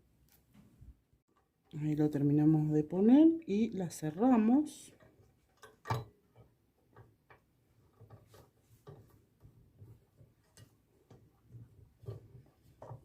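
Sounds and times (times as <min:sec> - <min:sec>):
clicks and light knocks: 0:04.9 - 0:13.0.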